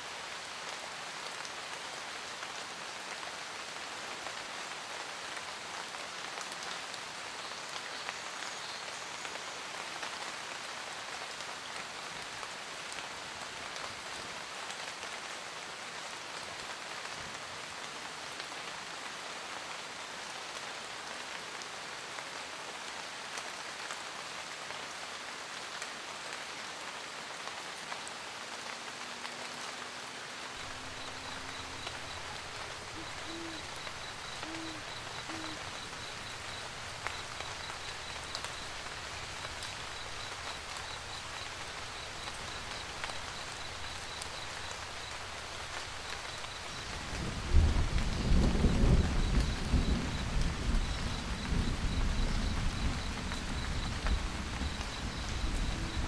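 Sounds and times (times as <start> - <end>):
rain pattering: 0.0 - 56.0
owl hooting: 30.6 - 38.7.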